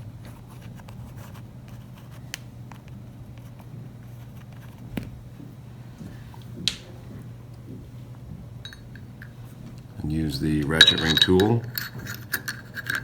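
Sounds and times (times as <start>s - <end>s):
steady low hum: 0.0s - 13.0s
small metal parts clicking: 10.6s - 13.0s.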